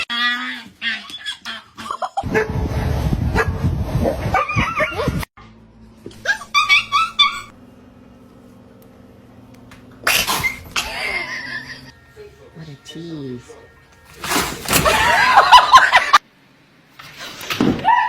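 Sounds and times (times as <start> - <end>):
dog yipping: 6.2 - 7.5.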